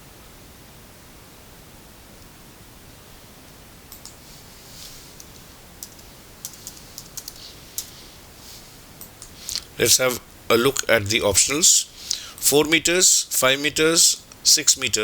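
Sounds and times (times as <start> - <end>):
steady hiss: 0.0 - 15.0
faint small clicks: 3.9 - 4.2, 5.2 - 8.0
soft rustles: 4.1 - 10.2.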